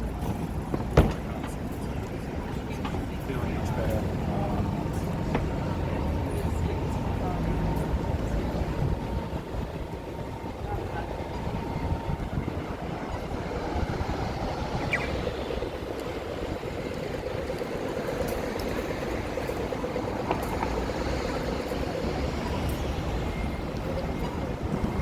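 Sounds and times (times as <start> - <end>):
engine hum: 0.0 - 25.0
passing vehicles rumble: 0.0 - 25.0.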